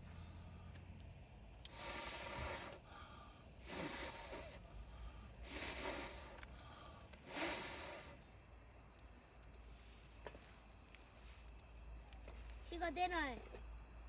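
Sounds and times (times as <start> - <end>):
person blowing on embers: 1.7 - 8.2.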